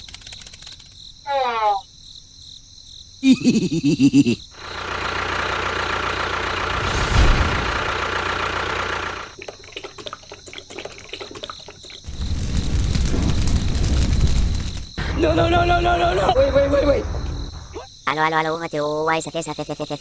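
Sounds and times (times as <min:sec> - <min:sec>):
clicking and rattling: 0:00.0 - 0:01.0
engine running: 0:04.6 - 0:09.4.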